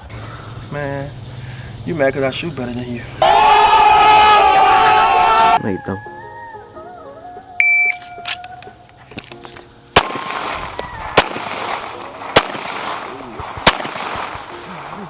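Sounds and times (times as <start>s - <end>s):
pistol shots with ringing echo: 10.0s - 15.0s.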